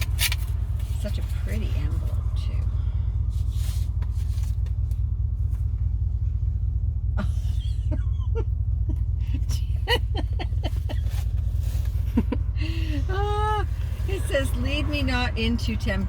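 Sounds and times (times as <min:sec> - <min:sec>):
paper envelope tearing: 0:00.0 - 0:01.0
car engine idling: 0:00.0 - 0:16.0.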